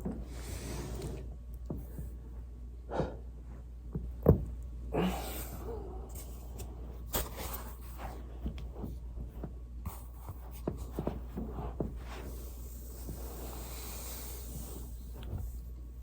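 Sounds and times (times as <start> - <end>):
steady low hum: 0.0 - 16.0
body rubbing on foam roller: 6.2 - 16.0.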